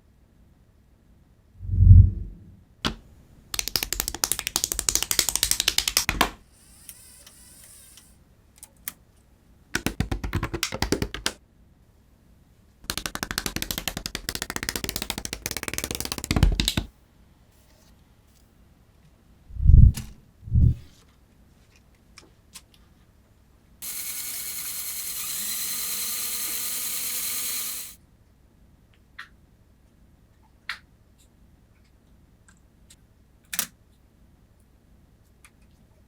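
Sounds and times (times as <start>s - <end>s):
low thud: 1.6s - 2.6s.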